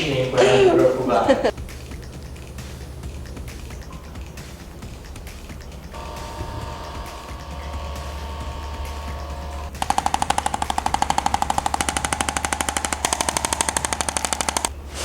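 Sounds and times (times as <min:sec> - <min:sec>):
motorized device hammering: 0:06.0 - 0:14.8.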